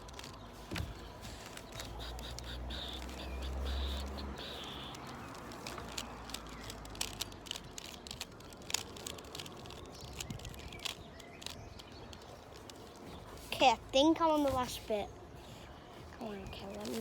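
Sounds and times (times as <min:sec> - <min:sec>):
puzzle cube plastic clicks: 0:00.0 - 0:13.5.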